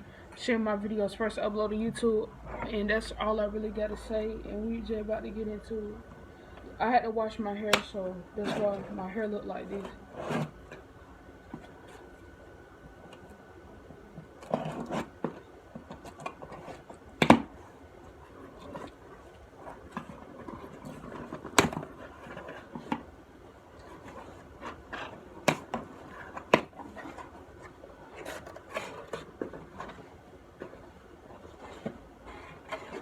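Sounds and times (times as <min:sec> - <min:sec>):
scratching and rubbing: 0:08.4 - 0:10.9, 0:14.1 - 0:23.1, 0:23.7 - 0:33.0.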